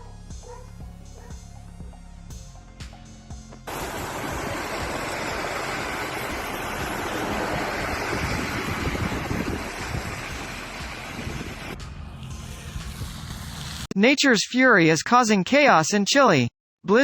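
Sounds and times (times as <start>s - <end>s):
blizzard wind on microphone: 3.7s - 11.8s.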